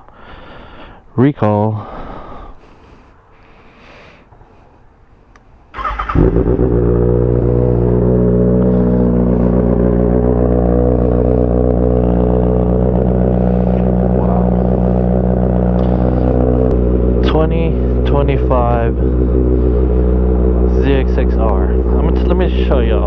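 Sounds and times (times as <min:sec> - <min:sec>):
motorcycle engine starting and idling: 0:05.7 - 0:23.0.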